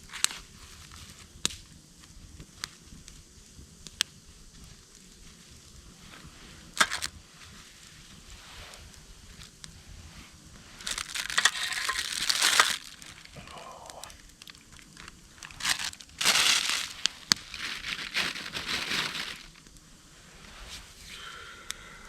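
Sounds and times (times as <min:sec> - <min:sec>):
crinkling and rustling: 0:06.0 - 0:09.6, 0:10.6 - 0:19.8.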